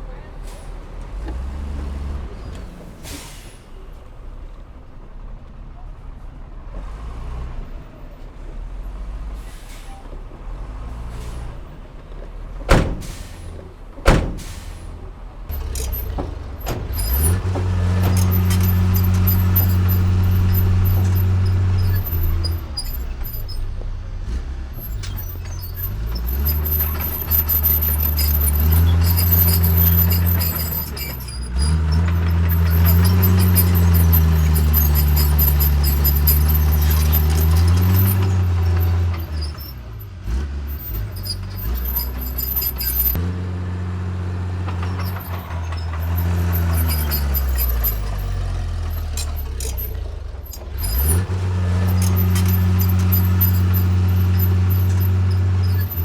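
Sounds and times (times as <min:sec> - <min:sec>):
diesel machinery engine: 0:00.0 - 0:56.0
sharp bangs: 0:12.7 - 0:13.4, 0:14.1 - 0:14.8.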